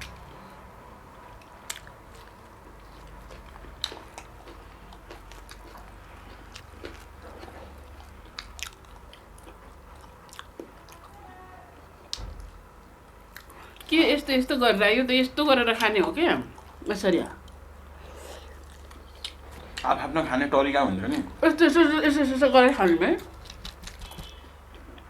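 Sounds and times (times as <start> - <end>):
close chewing of food: 0.0 - 14.0, 15.6 - 25.0
wet mouth clicks: 23.4 - 25.0.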